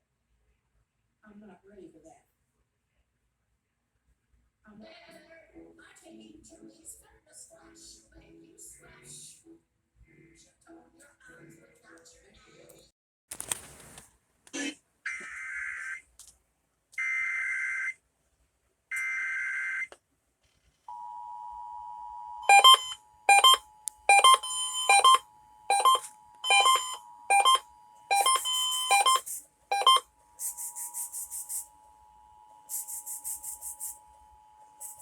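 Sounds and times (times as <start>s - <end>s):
loud beeps: 22.4s - 31.2s
two-tone alert signal: 22.4s - 31.6s
digital header data bursts: 22.5s - 31.7s, 32.6s - 34.0s, 34.8s - 35.0s
high rapid buzzing: 24.2s - 35.0s.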